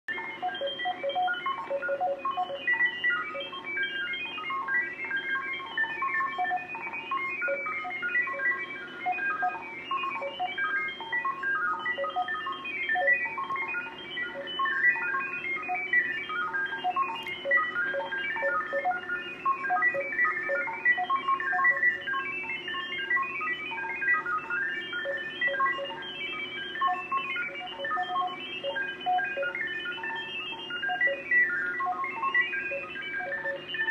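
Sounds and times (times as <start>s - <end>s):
rapid short beeps hopping pitches: 0.1s - 3.7s, 5.9s - 33.9s.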